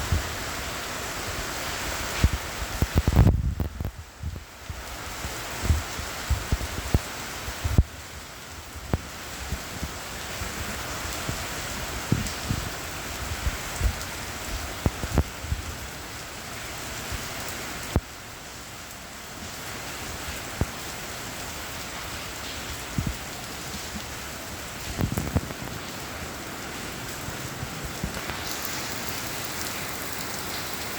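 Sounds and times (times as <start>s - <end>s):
steady rain: 0.0s - 30.9s
heavy raindrops tapping: 22.4s - 30.9s.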